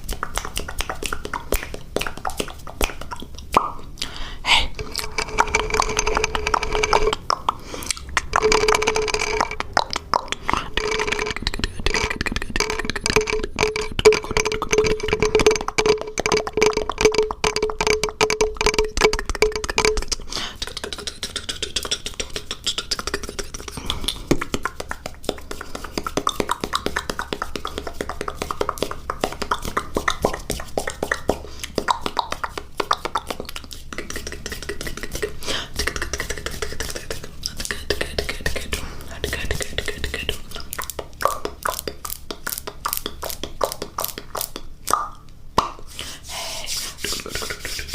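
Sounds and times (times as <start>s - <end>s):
tongue and lip clicks: 0.0s - 45.9s
steady held tone: 4.4s - 24.8s.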